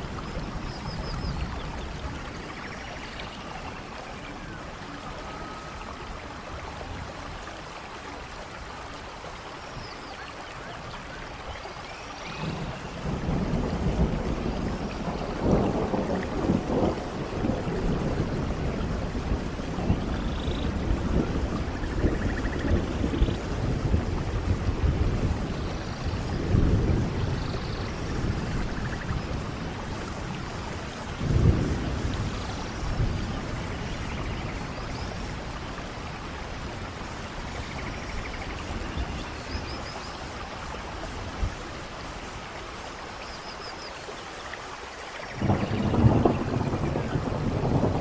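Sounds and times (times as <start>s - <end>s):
steady rain falling: 0.0s - 48.0s
thunder rumbling: 12.3s - 39.7s, 45.3s - 48.0s.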